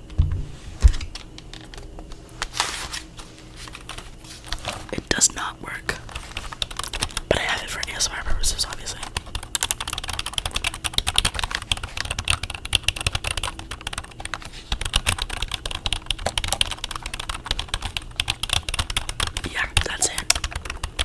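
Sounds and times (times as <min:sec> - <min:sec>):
fast typing on a keyboard: 0:06.1 - 0:08.0, 0:08.6 - 0:21.0.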